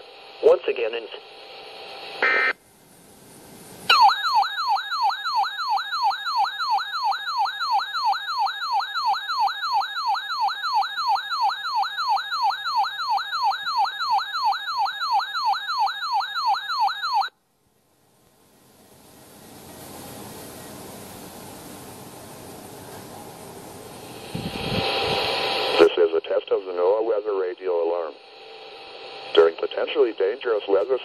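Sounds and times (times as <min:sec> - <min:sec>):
faint radio hiss: 0:00.0 - 0:03.9, 0:17.4 - 0:31.0
electronic alarm tone sweeping: 0:02.2 - 0:02.6, 0:03.9 - 0:17.3.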